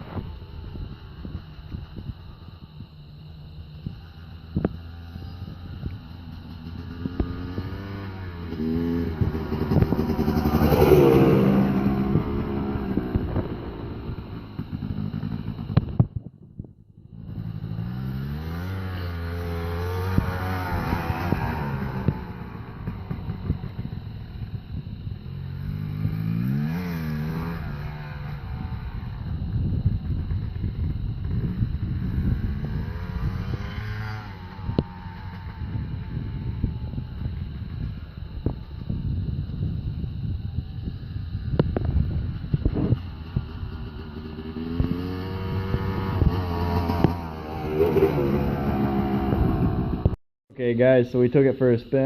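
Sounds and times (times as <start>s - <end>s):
dirt bike engine revving: 4.6s - 16.0s, 17.2s - 38.2s, 42.0s - 50.2s.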